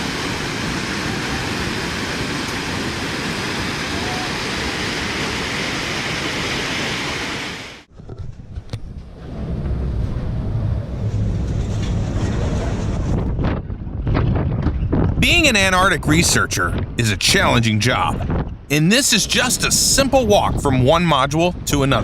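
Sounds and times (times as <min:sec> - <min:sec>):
rushing river floodwater: 0:00.0 - 0:07.9
wind buffeting microphone: 0:08.1 - 0:18.7.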